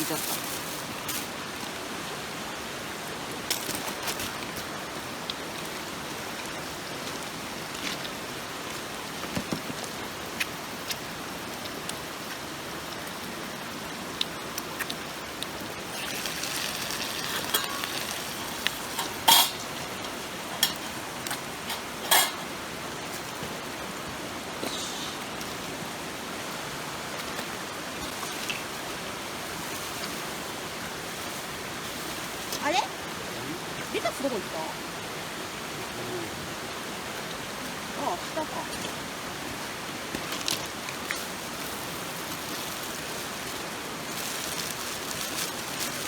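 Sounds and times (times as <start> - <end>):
mountain stream rushing: 0.0 - 46.0
utensils clinking against cookware: 17.2 - 18.2, 18.8 - 19.8, 20.6 - 22.5.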